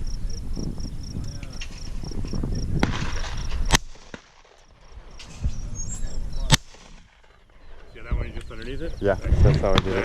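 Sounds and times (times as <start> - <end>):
shotgun shot: 2.8 - 5.1, 6.4 - 7.4
sharp crack: 2.8 - 5.5, 6.4 - 7.5.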